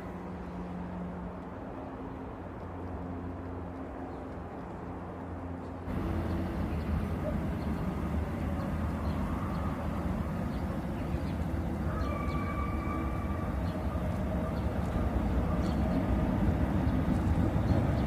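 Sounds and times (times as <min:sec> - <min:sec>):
train rumbling: 0:05.9 - 0:18.0.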